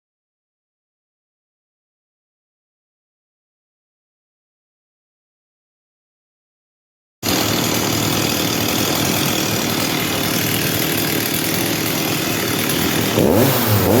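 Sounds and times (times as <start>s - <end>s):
chainsaw idling and revving: 7.2s - 14.0s.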